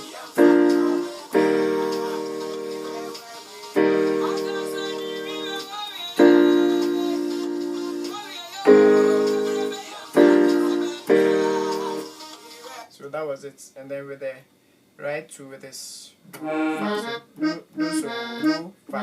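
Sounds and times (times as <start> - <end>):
piano chords ringing: 0.4 - 3.1, 3.8 - 12.0.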